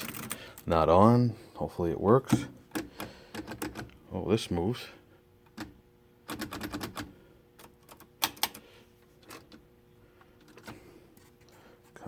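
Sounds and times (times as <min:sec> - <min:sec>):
typewriter mechanism clicking: 0:06.3 - 0:08.6.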